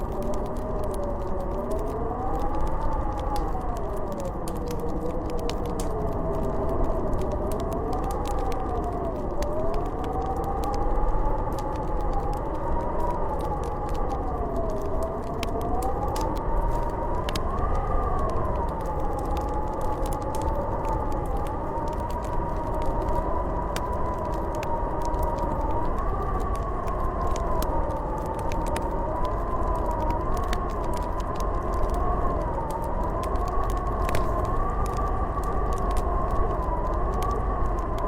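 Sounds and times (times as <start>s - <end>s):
faint fire crackles: 0.0s - 38.0s
wind howling: 0.0s - 38.0s.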